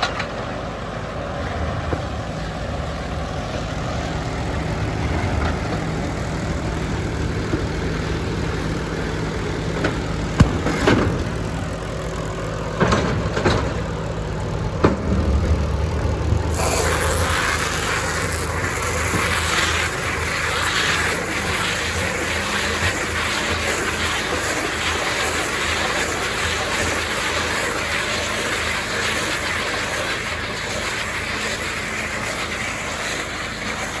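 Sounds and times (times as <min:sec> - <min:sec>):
tractor engine running: 0:00.0 - 0:34.0.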